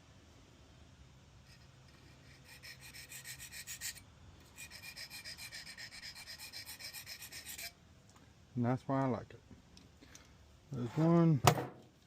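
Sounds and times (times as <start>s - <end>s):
knife scraping on diamond sharpener: 1.5s - 7.8s.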